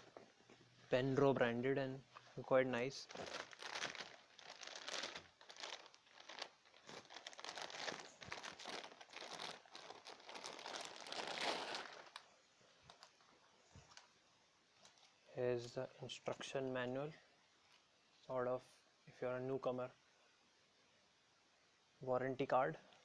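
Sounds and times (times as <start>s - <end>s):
packaging crinkling and rustling: 2.1s - 14.2s, 14.8s - 15.2s.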